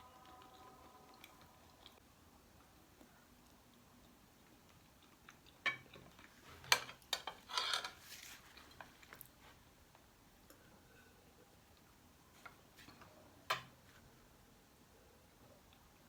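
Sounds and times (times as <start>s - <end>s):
cutlery clinking on a plate: 6.6s - 8.0s
cutlery scraping: 6.6s - 8.4s.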